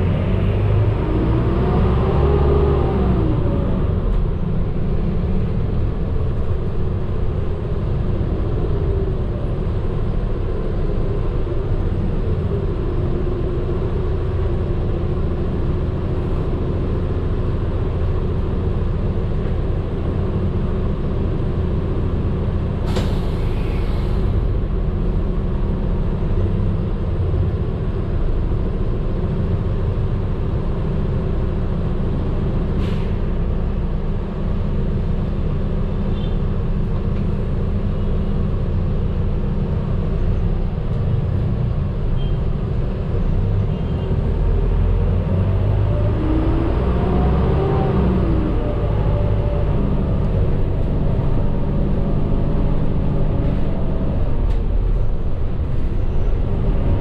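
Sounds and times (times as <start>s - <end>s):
bus engine and road rumble: 0.0s - 57.0s
air brake hiss: 22.8s - 24.4s, 32.8s - 33.2s.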